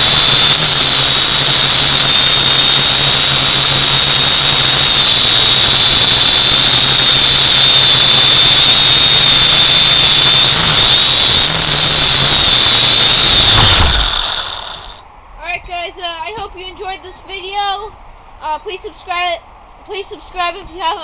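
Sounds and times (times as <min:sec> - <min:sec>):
drone motors high-pitched whine: 0:00.0 - 0:15.0.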